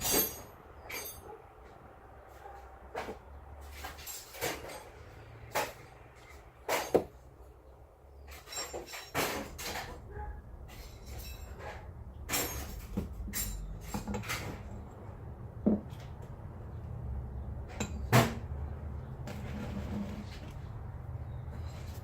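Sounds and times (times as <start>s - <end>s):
metal tools clinking on bench: 0.0s - 1.4s, 8.2s - 10.1s, 10.7s - 15.0s.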